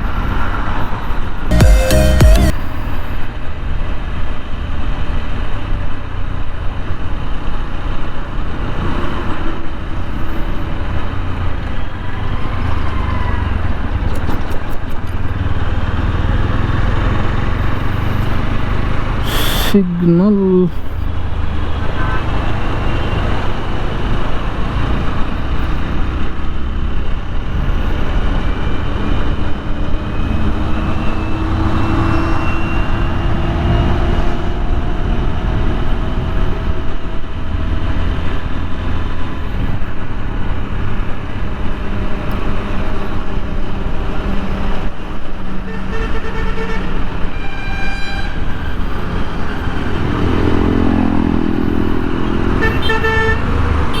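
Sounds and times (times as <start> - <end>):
vehicle horn: 1.5 - 2.8, 21.8 - 22.5, 45.6 - 48.8, 52.5 - 54.0.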